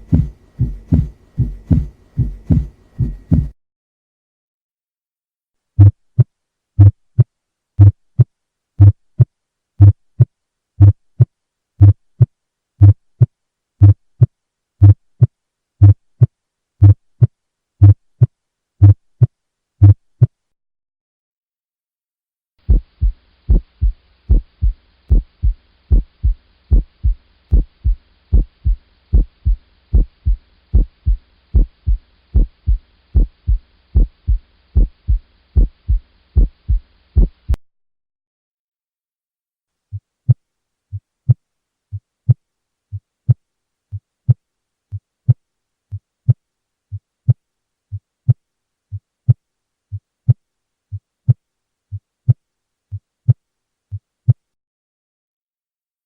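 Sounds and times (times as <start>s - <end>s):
faint steady hiss and hum: 0.0s - 3.6s, 5.6s - 20.5s, 22.6s - 37.6s, 39.7s - 54.6s
heartbeat lub-dub: 0.0s - 3.6s, 12.8s - 20.3s, 22.6s - 37.6s.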